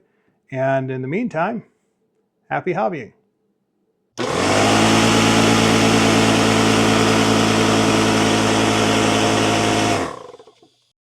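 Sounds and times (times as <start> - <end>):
air compressor motor humming: 4.2 - 10.8.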